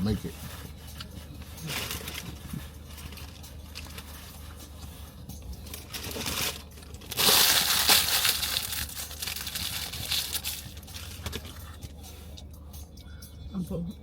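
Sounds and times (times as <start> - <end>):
paper wrapper crumpling: 1.6 - 4.5, 5.6 - 11.8.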